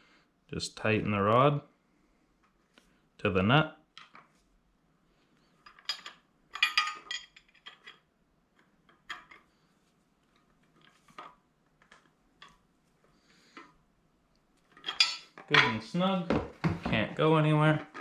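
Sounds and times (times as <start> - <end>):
wrench clinking on metal: 5.7 - 8.0, 14.8 - 15.8.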